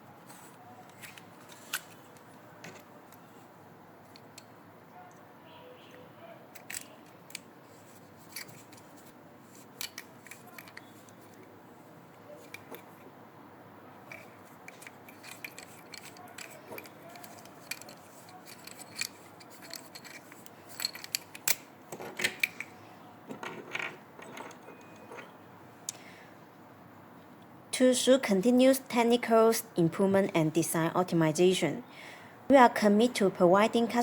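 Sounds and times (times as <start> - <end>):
small parts clicking and rattling: 6.5 - 11.5, 12.3 - 13.1, 14.0 - 25.3.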